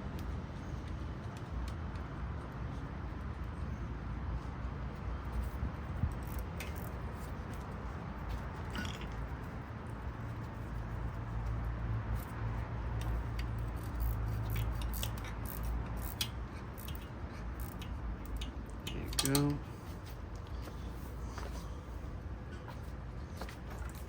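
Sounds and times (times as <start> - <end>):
steady low hum: 0.0 - 24.0
bolts being threaded in: 6.1 - 7.6, 8.6 - 9.3, 12.9 - 19.7
metallic clicks of hand tools: 13.0 - 19.6.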